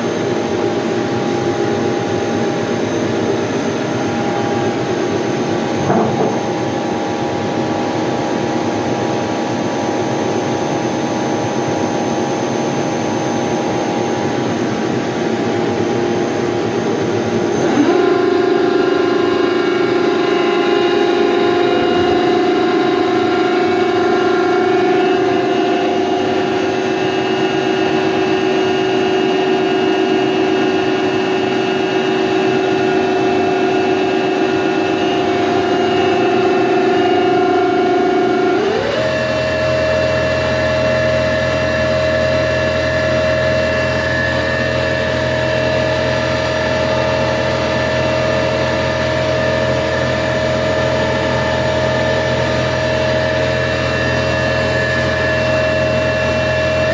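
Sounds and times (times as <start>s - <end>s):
lathe mechanical whine: 0.0s - 56.9s
low hum: 3.1s - 8.4s, 17.0s - 28.3s.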